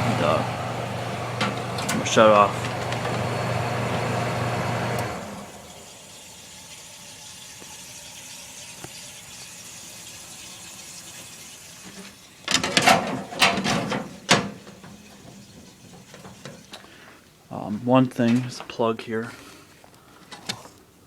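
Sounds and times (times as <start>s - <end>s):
power cord and plug clattering: 1.3s - 3.3s
faint steady hiss: 5.0s - 21.0s.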